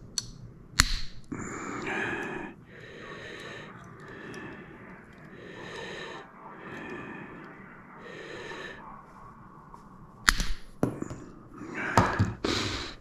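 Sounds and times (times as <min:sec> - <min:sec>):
sharp plastic clicks: 0:00.0 - 0:01.4, 0:10.3 - 0:10.8
heavy breathing: 0:01.3 - 0:13.0.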